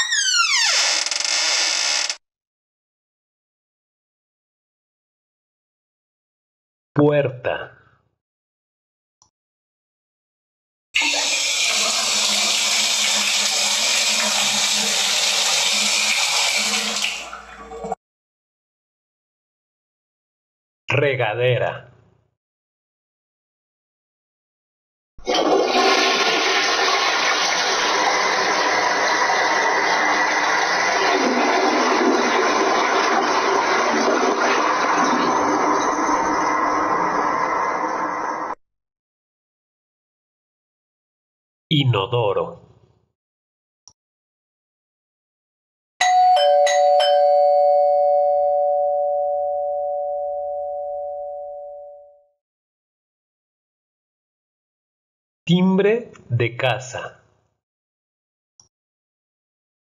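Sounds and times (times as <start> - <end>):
shower water spraying: 11.0 - 17.4
doorbell chime ding-dong: 46.0 - 52.3.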